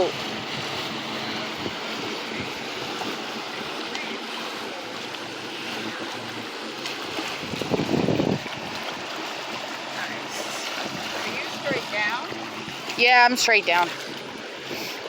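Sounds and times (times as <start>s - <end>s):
motorboat passing: 0.0s - 15.0s
water washing: 0.0s - 15.0s
wind: 0.0s - 15.0s.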